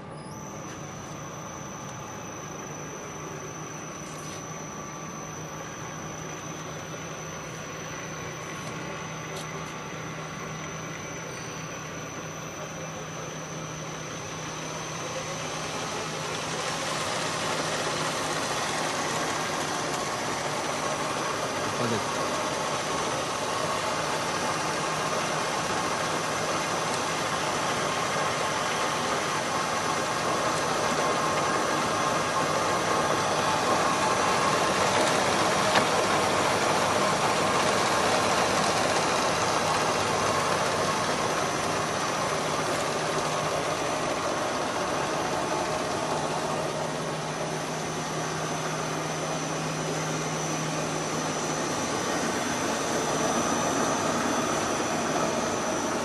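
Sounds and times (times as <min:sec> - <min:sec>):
lathe mechanical hum and whine: 0:00.0 - 0:56.0.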